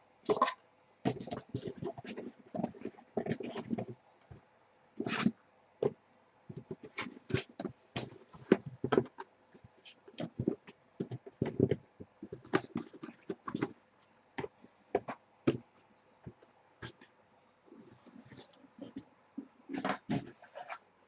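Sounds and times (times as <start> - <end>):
hands handling cardboard boxes: 1.1 - 4.4, 5.0 - 13.8, 14.4 - 17.1, 17.8 - 21.0
taps and knocks on cardboard: 14.4 - 15.7.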